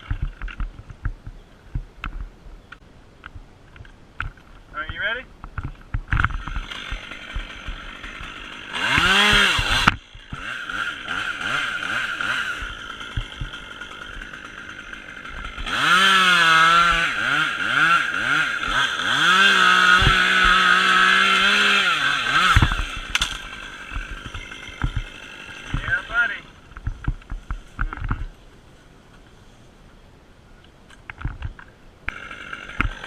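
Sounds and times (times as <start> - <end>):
chainsaw cutting wood: 5.6 - 28.4, 32.1 - 33.0
chainsaw revving and idling: 6.2 - 28.4, 32.1 - 33.0.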